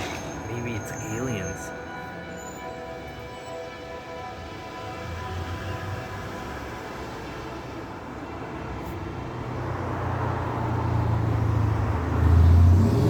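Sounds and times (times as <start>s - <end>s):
vehicle approaching: 9.4s - 13.0s.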